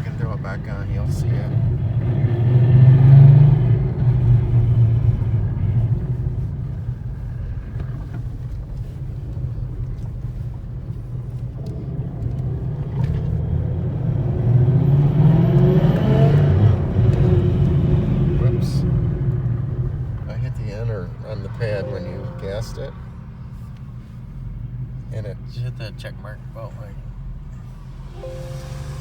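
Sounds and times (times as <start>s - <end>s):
car engine drone inside cabin: 0.0s - 29.0s.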